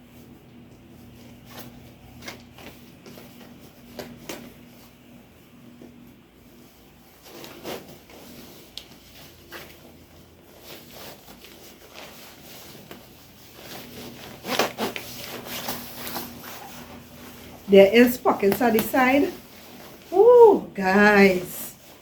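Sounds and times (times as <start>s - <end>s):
coat fabric rustling: 6.4s - 22.0s.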